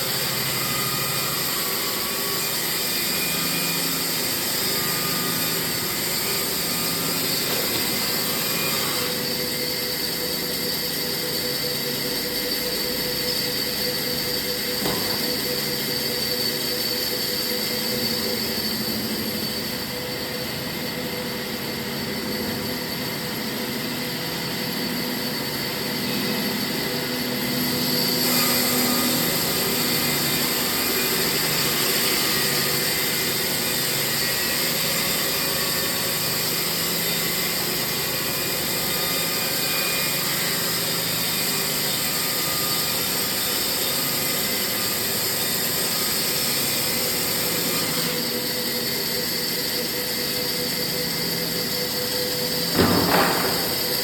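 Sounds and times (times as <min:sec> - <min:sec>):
sawmill cutting log: 0:00.0 - 0:11.0, 0:25.9 - 0:54.0.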